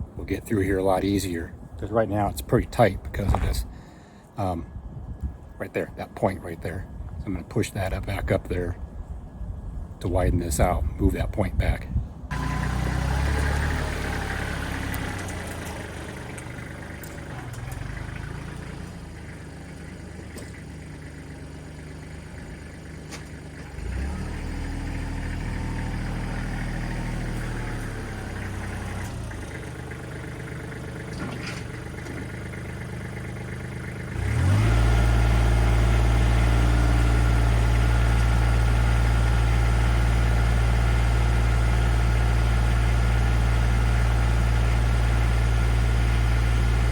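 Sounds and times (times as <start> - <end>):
earth-moving machine engine: 12.2 - 46.9.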